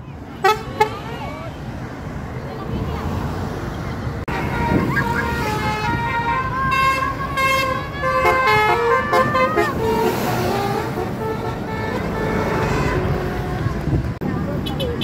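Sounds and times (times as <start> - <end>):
traffic rumble: 0.0 - 15.0
bus horn playing a melody: 0.4 - 1.0, 4.3 - 14.0.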